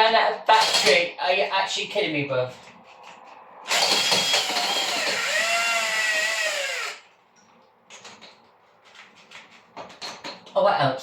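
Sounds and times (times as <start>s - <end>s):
cordless drill motor whining: 3.7s - 7.1s.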